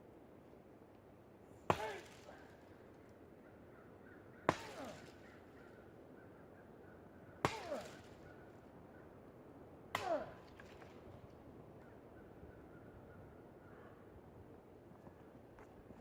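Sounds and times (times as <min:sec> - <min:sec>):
machete chopping into tree: 0:01.7 - 0:02.3, 0:07.4 - 0:08.0.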